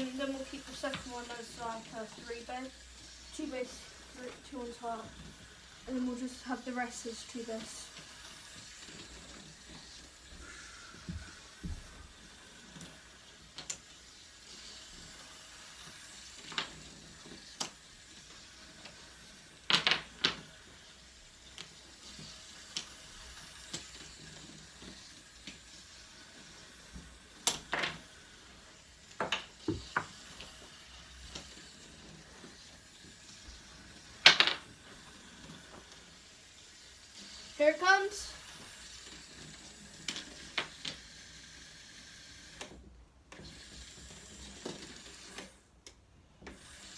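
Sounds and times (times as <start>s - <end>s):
dominoes clacking: 0.0s - 10.3s, 11.3s - 42.6s.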